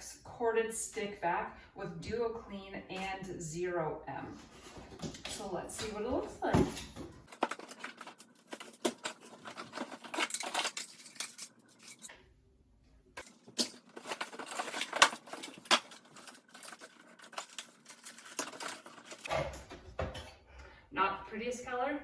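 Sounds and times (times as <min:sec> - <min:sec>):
packaging rustling and tearing: 0:07.3 - 0:12.1, 0:13.2 - 0:19.3.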